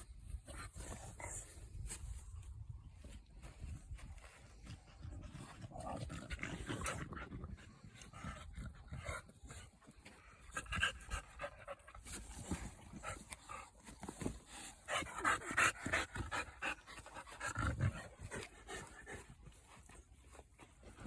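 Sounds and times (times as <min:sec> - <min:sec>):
puppy panting: 0:06.5 - 0:21.0.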